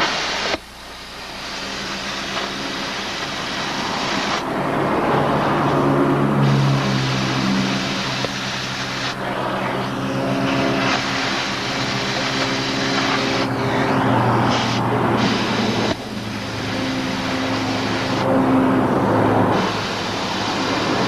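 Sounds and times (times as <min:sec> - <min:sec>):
cutting torch hissing: 0:00.0 - 0:21.0
low hum: 0:00.6 - 0:21.0.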